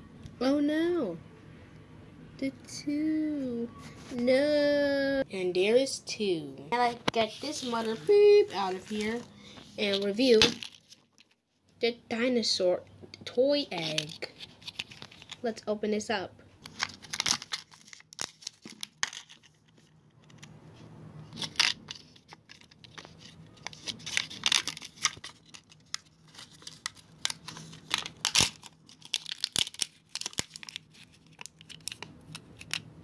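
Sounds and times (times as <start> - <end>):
packaging tearing and crinkling: 7.2 - 11.4, 13.8 - 15.4, 16.6 - 20.5, 21.3 - 32.8.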